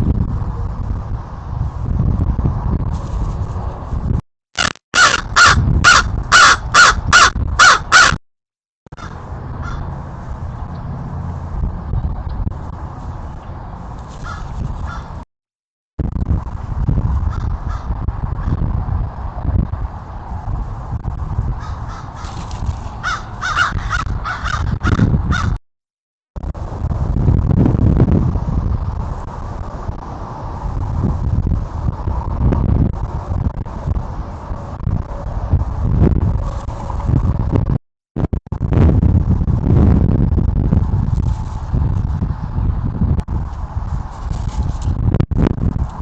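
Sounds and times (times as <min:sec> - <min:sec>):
low outdoor rumble: 0:00.0 - 0:04.2, 0:08.9 - 0:15.2, 0:16.0 - 0:25.6, 0:26.4 - 0:46.0
crow cawing: 0:05.0 - 0:08.2, 0:09.0 - 0:09.9, 0:14.2 - 0:15.1, 0:21.6 - 0:22.3, 0:23.0 - 0:25.6.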